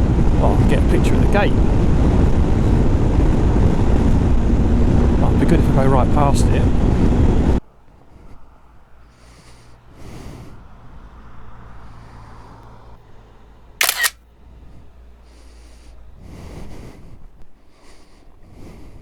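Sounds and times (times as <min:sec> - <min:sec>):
camera shutter click: 0:13.8 - 0:14.2.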